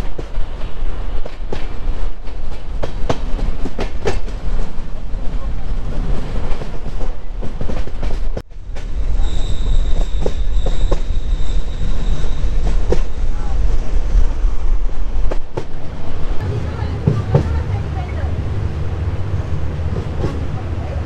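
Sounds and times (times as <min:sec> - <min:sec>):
train rumble inside coach: 0:00.0 - 0:21.0.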